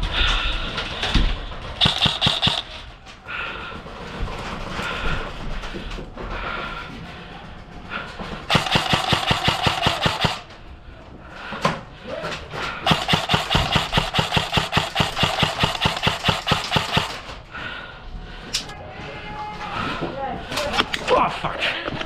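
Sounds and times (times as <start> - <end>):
airsoft gun firing full auto: 1.8 - 2.8, 8.5 - 10.5, 12.8 - 17.3.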